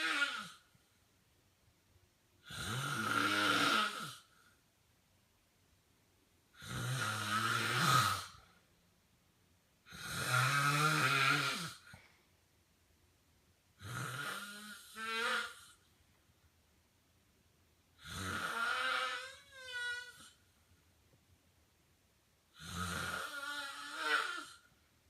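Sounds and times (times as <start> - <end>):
man snoring: 0.0 - 0.6, 2.4 - 4.3, 6.6 - 8.5, 9.9 - 12.0, 13.8 - 15.8, 18.0 - 20.3, 22.6 - 24.7.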